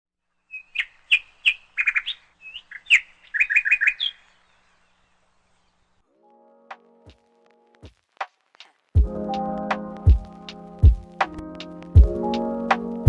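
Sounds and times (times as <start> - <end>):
bird chirping: 0.3 - 6.1.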